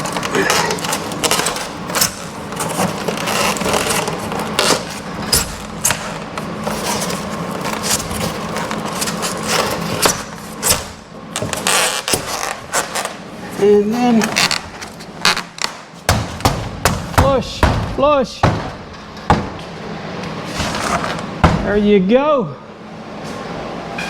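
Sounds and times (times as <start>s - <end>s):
foam scraping against metal: 0.0s - 15.6s.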